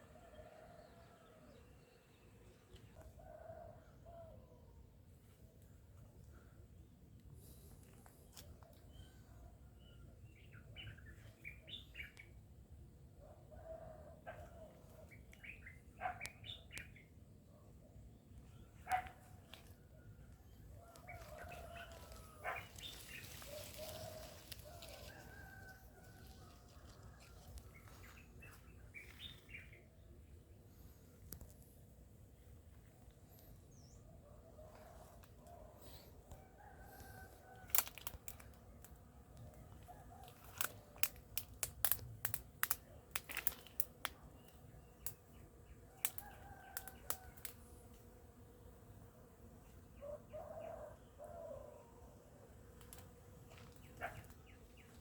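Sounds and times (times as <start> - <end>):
rooster crowing faintly: 0.0 - 2.0, 18.9 - 29.7, 33.8 - 38.8, 39.4 - 41.2, 45.9 - 48.2
rooster crowing: 20.8 - 22.6, 23.4 - 27.5
small birds chirping: 21.0 - 25.6
sharp clicks and cracks: 37.7 - 39.0, 40.4 - 45.2.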